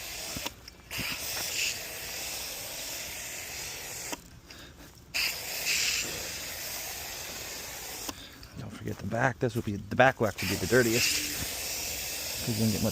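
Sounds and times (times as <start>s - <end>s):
spray hissing: 0.0s - 4.3s, 5.1s - 8.2s, 10.2s - 12.9s.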